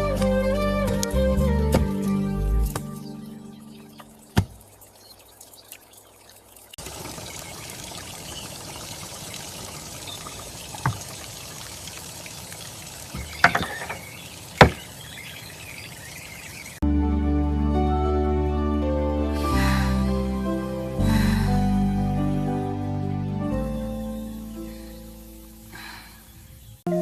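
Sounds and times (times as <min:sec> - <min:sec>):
water pouring: 0:03.7 - 0:16.8.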